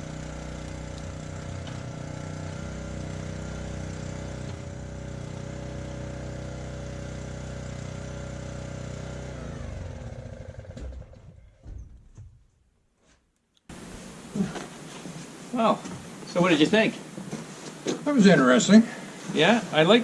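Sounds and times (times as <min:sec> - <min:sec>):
engine running and winding down: 0:00.0 - 0:11.4.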